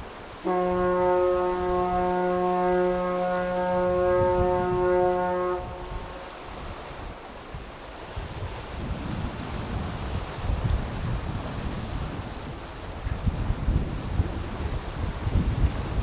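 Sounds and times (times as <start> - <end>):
surf: 0.0 - 16.0
wind on microphone: 0.0 - 16.0
ship's whistle blast: 0.4 - 6.8.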